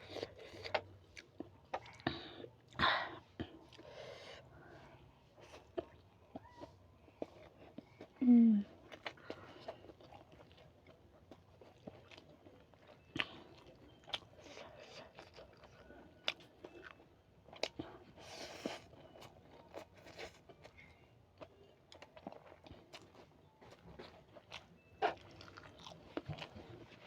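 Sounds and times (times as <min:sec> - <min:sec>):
crunchy chewing: 0:05.4 - 0:27.0.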